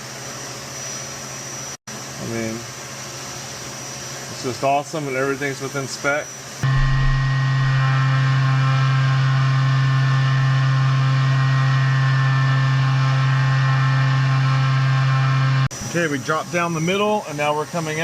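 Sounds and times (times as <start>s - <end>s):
mill spindle humming and ringing: 6.6s - 15.7s.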